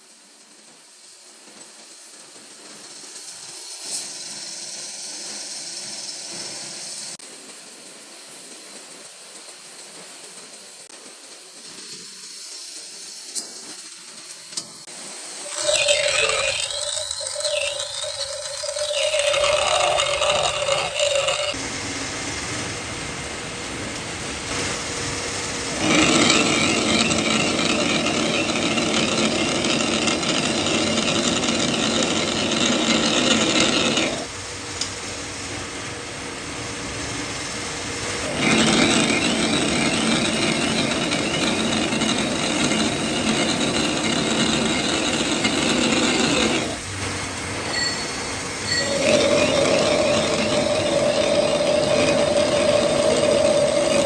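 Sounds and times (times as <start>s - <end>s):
metal lathe rattling: 15.4s - 21.6s, 25.7s - 34.3s, 38.2s - 46.8s, 48.6s - 54.0s.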